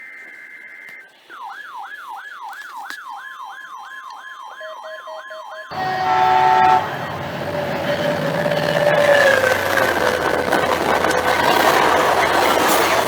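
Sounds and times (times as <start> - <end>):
steady siren tone: 0.4 - 13.0
electronic siren wailing: 1.3 - 13.0
harsh burst of mixed tones: 5.7 - 13.0.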